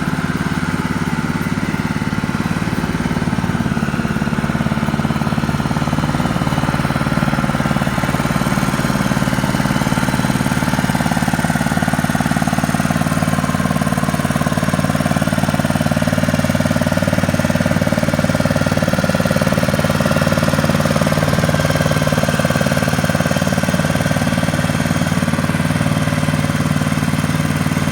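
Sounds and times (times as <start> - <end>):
sand sieving machine droning: 0.0 - 27.9.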